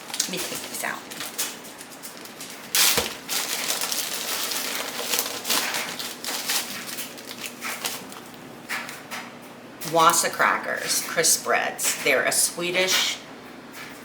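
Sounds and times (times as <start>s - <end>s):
package crinkling and crackling: 0.0s - 9.1s.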